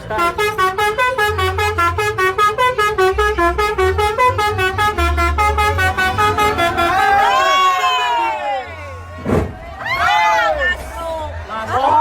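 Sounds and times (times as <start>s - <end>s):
bus horn playing a fast melody: 0.0s - 7.5s.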